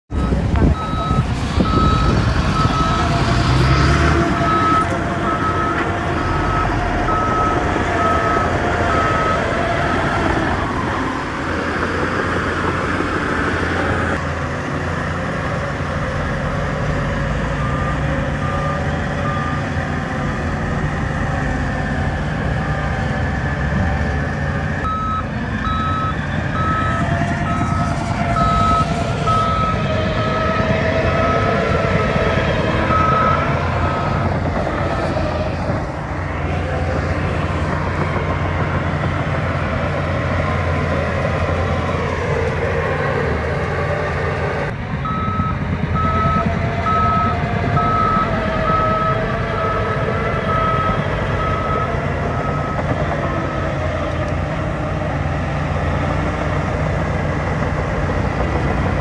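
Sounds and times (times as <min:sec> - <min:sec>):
reversing alarm beeping: 0:00.1 - 0:10.2, 0:17.6 - 0:20.8, 0:24.8 - 0:35.2, 0:45.0 - 0:53.6
diesel engine running: 0:00.1 - 0:59.0.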